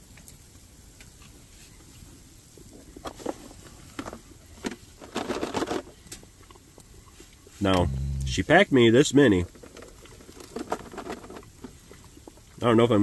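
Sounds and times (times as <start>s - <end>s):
packaging rustling and clicking: 9.5s - 11.8s.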